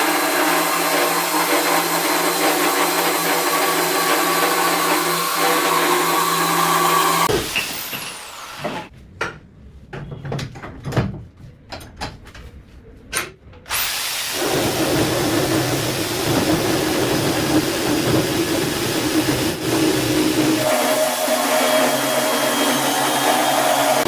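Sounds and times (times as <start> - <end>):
electric drill whirring: 0.0 - 8.9, 13.7 - 15.4, 17.6 - 24.0
sharp clicks and knocks: 9.2 - 12.5.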